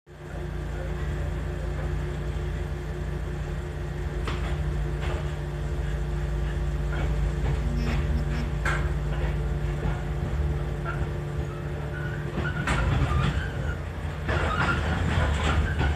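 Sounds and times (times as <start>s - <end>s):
constant hum: 0.2s - 15.9s
train carriage rumble: 3.3s - 15.9s.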